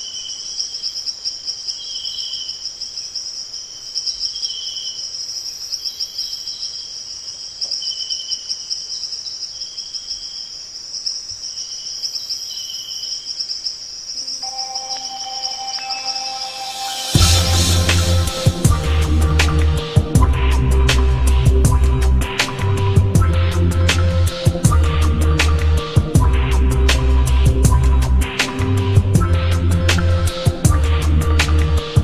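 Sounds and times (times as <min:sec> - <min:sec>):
crickets trilling: 0:00.0 - 0:17.1
lower insect chirping bouts: 0:00.0 - 0:26.5
music: 0:14.2 - 0:32.0.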